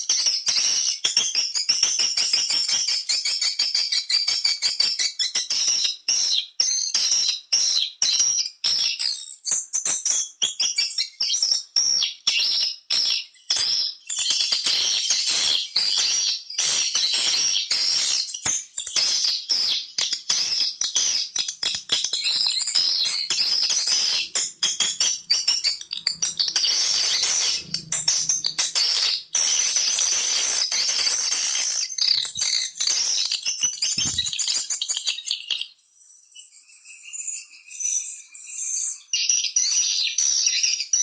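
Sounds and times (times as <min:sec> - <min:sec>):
swiftlet chirps through a speaker: 0:22.8 - 0:33.2.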